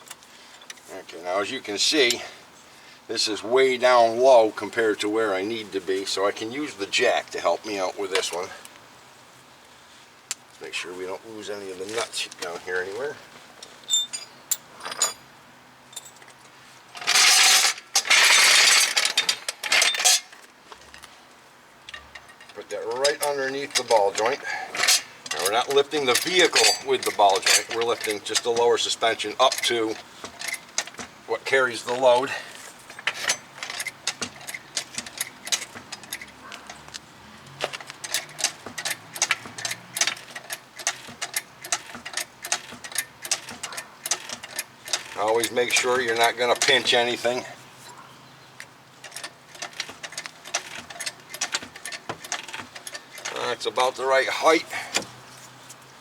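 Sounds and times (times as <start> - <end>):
light metal clinks: 13.9 - 15.3, 15.9 - 16.4, 21.9 - 36.9
floor jack rattling and ratcheting: 17.0 - 20.3, 37.6 - 47.0, 49.0 - 53.4
jack clicking: 21.9 - 47.5, 48.6 - 55.2.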